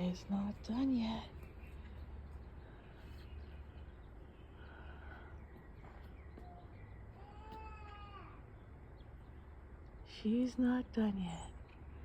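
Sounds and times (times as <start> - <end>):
bird chirps and calls: 0.0 - 9.6
low outdoor rumble: 0.0 - 12.0.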